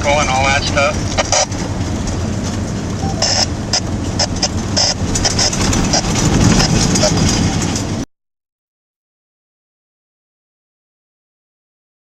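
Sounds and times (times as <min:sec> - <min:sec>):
vehicle rumbling on the move: 0:00.0 - 0:08.1.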